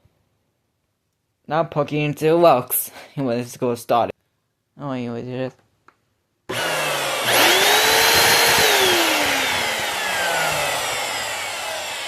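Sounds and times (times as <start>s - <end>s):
vacuum cleaner motor whine: 6.5s - 12.0s.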